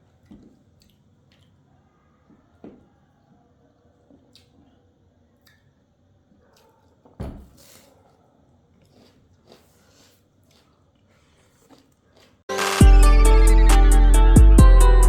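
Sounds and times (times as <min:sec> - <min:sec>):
person chewing: 0:00.1 - 0:01.6, 0:08.7 - 0:12.4.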